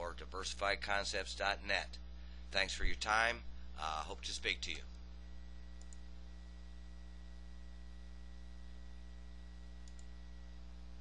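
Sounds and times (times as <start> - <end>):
electrical mains hum: 0.0 - 11.0.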